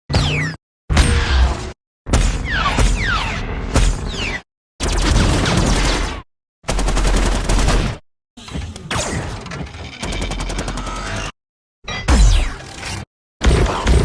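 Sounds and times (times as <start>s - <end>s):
sci-fi rapid gunfire: 4.8s - 8.0s.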